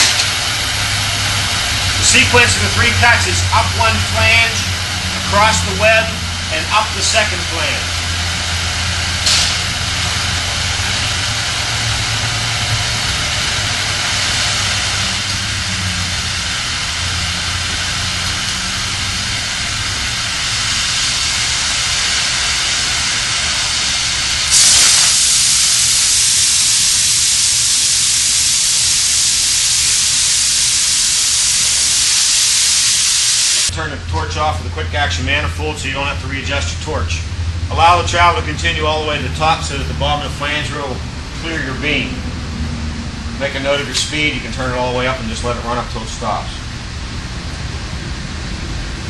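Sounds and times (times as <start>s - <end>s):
cutting torch hissing: 0.0s - 33.7s.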